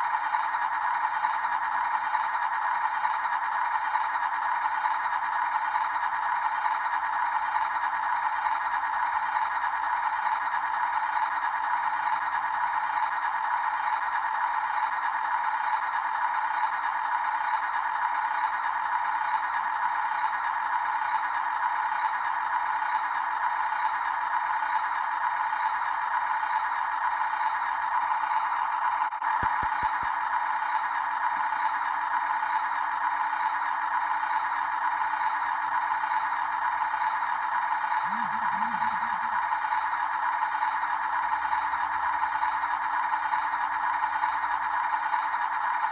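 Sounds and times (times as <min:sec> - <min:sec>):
small electric motor and gears rattling: 0:00.0 - 0:45.9
small motors and gearboxes rattling: 0:22.5 - 0:39.4.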